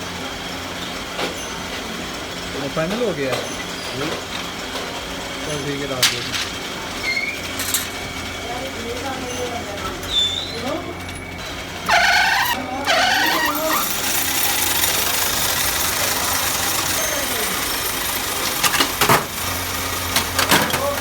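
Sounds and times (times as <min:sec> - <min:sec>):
workshop machinery humming: 0:00.0 - 0:21.0
squealing bursts: 0:10.0 - 0:17.8.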